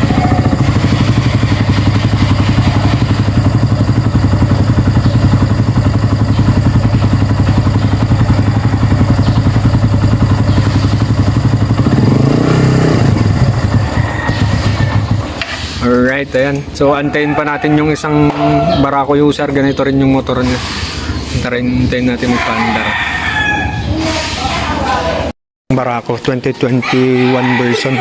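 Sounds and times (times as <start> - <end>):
motorcycle engine idling and revving: 0.0 - 25.3.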